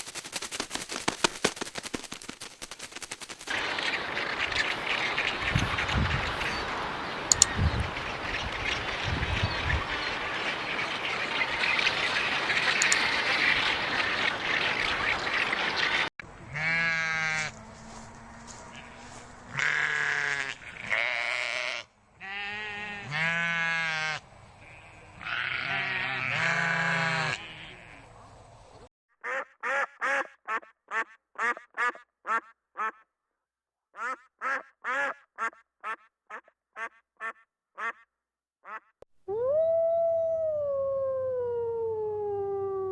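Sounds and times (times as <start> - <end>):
ducks quacking: 12.0 - 33.0
sheep or goats bleating: 16.4 - 28.0.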